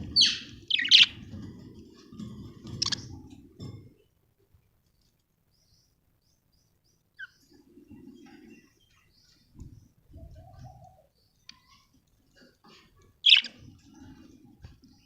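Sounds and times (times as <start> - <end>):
budgerigars chirping: 0.0 - 1.2, 13.2 - 13.6.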